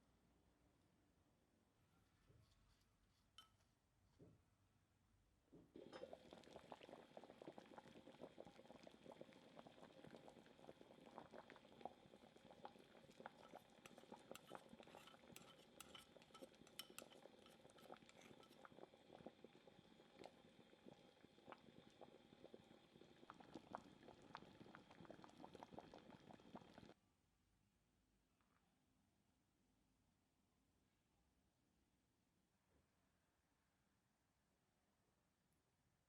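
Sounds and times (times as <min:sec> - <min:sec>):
pot bubbling: 0:05.7 - 0:27.0.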